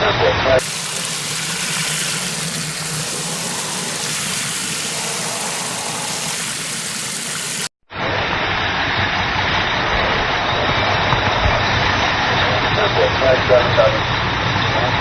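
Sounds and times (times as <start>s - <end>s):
steady rushing noise: 0.6s - 10.7s.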